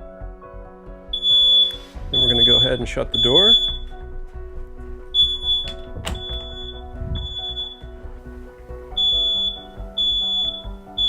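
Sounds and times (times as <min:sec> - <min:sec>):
soft background music: 0:00.0 - 0:11.0
smoke alarm beeping: 0:01.1 - 0:04.0, 0:05.2 - 0:08.0, 0:09.0 - 0:11.0
door shutting: 0:05.2 - 0:08.0.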